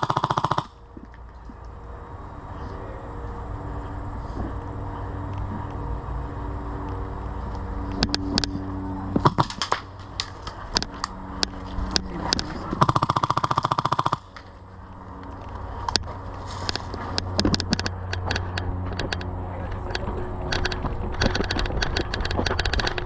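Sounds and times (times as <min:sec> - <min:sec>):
airsoft gun shots: 0:00.0 - 0:00.8, 0:09.2 - 0:10.3, 0:12.8 - 0:14.4
low rumble: 0:00.0 - 0:23.0.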